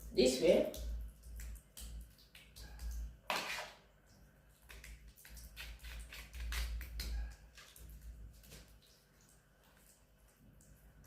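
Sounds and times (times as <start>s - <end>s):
kitchen utensil scraping: 3.3s - 3.8s.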